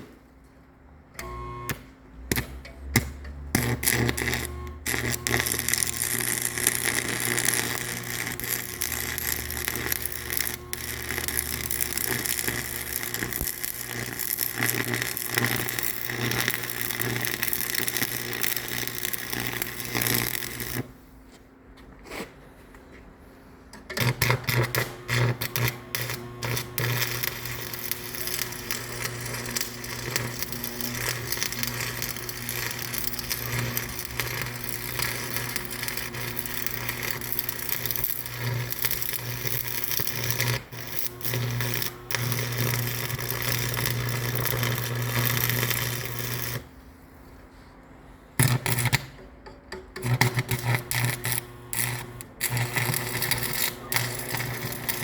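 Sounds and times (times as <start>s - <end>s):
machine humming and rattling: 1.2s - 21.0s, 23.7s - 46.7s, 48.4s - 55.0s.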